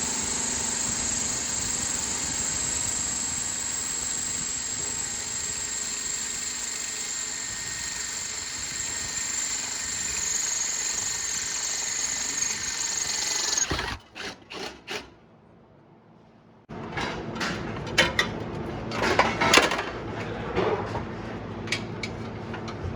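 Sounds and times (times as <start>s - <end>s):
short bursts: 0.0s - 14.0s
power tool whining: 0.0s - 14.2s.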